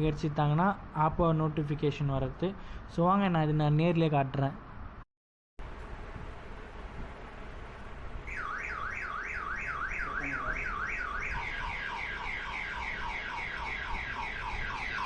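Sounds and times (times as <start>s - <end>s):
phone car alarm siren: 8.3s - 15.0s.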